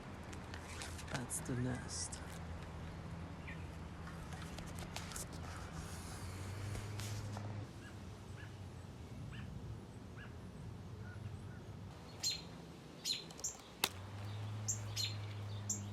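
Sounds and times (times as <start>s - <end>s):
small bird chirping: 11.0s - 15.9s.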